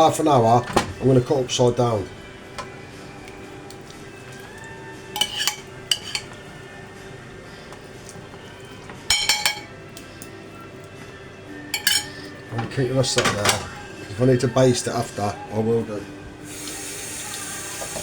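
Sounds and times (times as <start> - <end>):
dishes clinking: 5.2 - 6.4, 8.9 - 9.8, 11.8 - 13.7.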